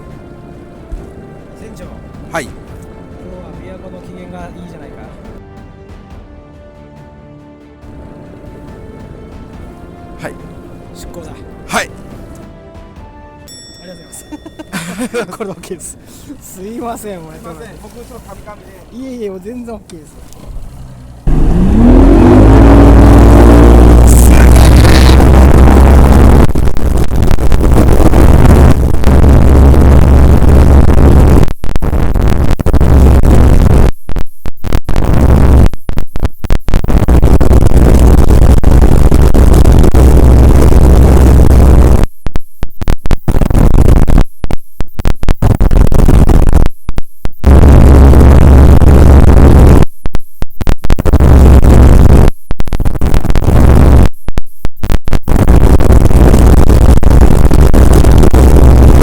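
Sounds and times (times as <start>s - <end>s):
boat engine: 15.8s - 31.3s, 37.8s - 42.0s.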